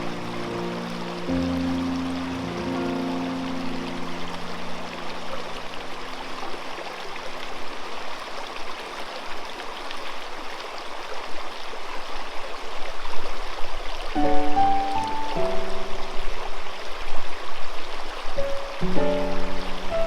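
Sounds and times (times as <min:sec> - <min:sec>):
held piano notes: 0:00.0 - 0:06.8, 0:14.2 - 0:16.7, 0:18.4 - 0:20.0
babbling river water: 0:00.0 - 0:20.0.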